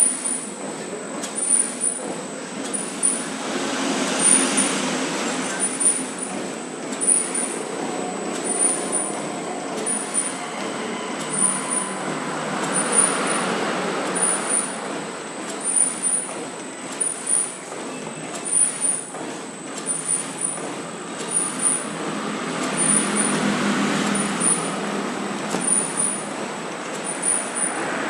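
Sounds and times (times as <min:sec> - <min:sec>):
cutting machine mechanical din: 0:00.0 - 0:28.0
machine cutting stroke: 0:07.0 - 0:14.9, 0:21.2 - 0:22.0, 0:22.6 - 0:24.9, 0:25.5 - 0:26.3, 0:26.9 - 0:28.0.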